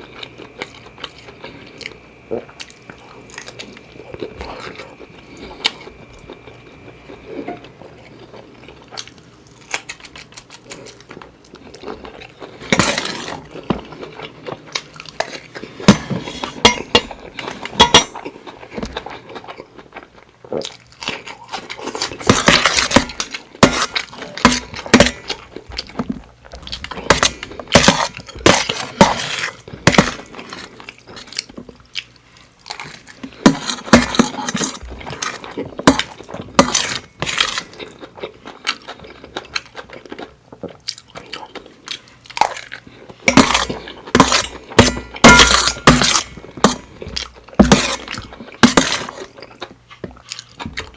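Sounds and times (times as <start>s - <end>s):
cutlery clinking on a plate: 15.9s - 18.2s.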